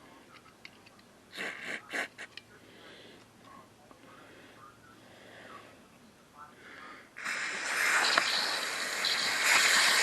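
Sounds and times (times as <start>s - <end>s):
spray cleaner hissing: 7.2s - 10.0s.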